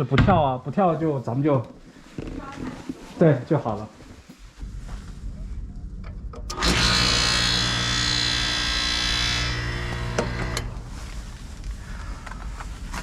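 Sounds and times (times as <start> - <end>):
compressor humming and hissing: 6.5 - 11.4.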